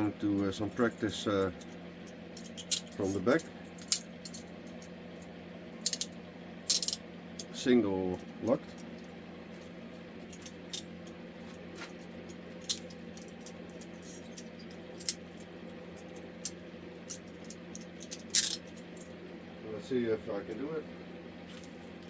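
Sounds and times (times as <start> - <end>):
handcuffs clattering: 2.4 - 4.5, 5.9 - 6.1, 6.7 - 7.0, 12.6 - 15.5, 16.4 - 19.1
handcuffs clicking and clinking: 17.1 - 18.8.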